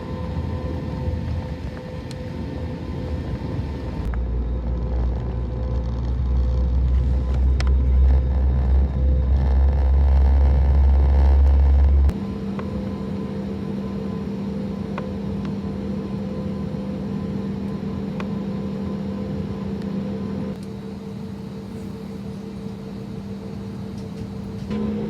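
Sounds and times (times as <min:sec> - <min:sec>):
steady low tone: 0:00.0 - 0:19.4
airliner cabin hum: 0:00.0 - 0:25.0.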